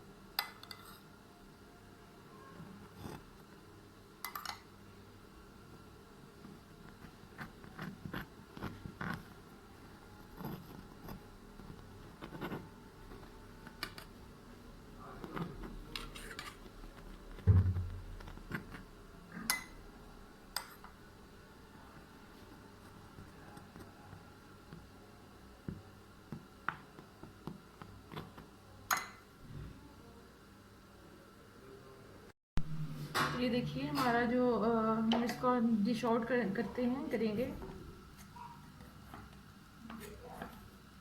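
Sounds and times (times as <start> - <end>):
loud thump: 17.4 - 18.2.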